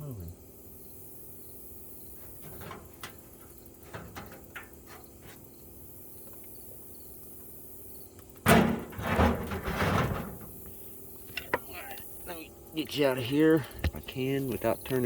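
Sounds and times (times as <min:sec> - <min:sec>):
loud clatter: 0:08.5 - 0:10.6.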